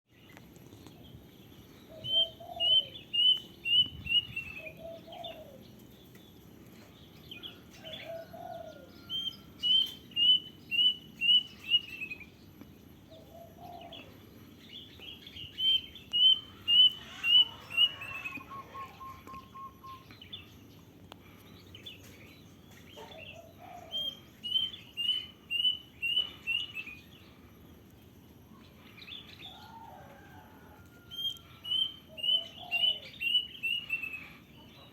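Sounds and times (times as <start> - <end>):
cuckoo whistled song: 2.0 - 5.6, 15.6 - 20.2.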